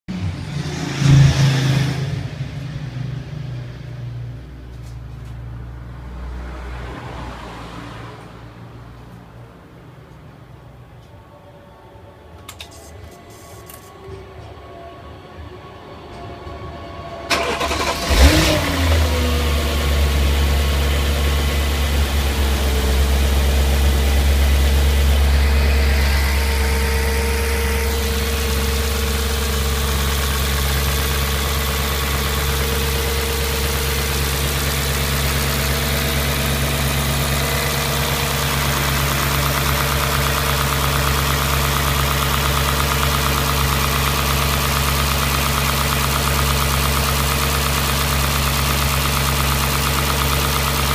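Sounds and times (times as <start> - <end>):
car engine starting and idling: 17.2 - 50.9.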